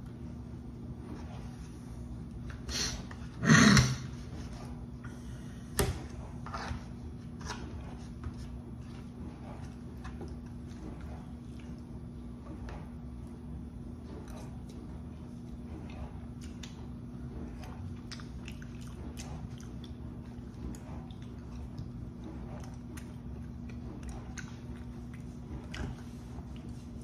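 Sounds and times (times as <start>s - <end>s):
steady low electrical hum: 0.0s - 27.0s.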